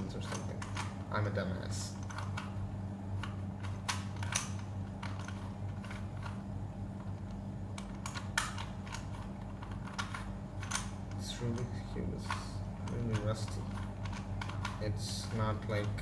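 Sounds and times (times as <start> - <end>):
puzzle cube clicking while turned: 3.2 - 6.4, 7.8 - 11.7, 12.3 - 16.0.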